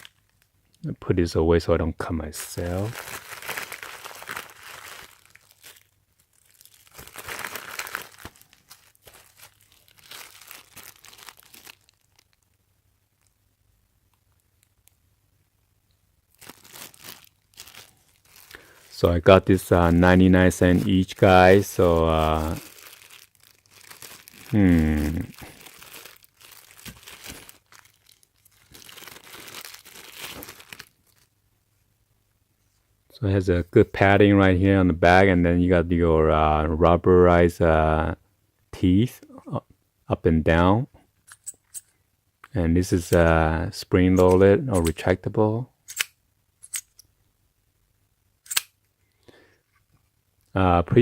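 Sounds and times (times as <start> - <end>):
packaging bag crinkling: 0.0 - 0.4, 2.4 - 12.6, 16.3 - 31.3.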